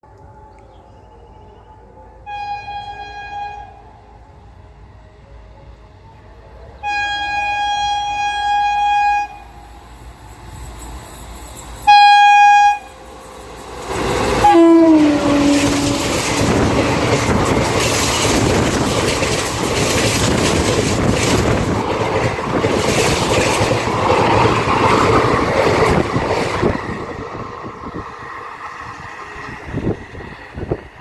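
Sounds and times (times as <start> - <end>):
train passing at high speed: 1.5 - 31.0
locomotive horn blast: 2.2 - 4.1, 6.8 - 9.7, 11.8 - 13.1, 14.1 - 16.8
wheel clatter of coaches: 15.6 - 26.5.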